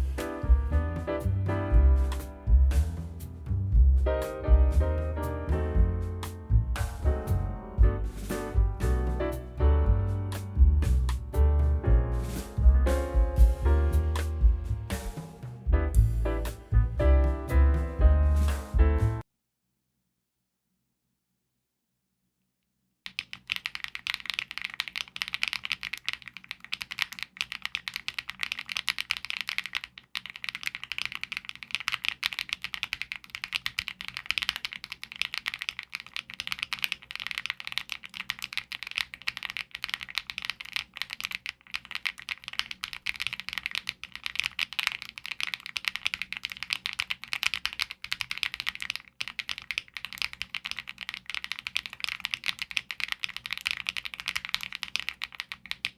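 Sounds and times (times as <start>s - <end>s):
fast typing on mechanical keyboard: 23.1s - 55.9s.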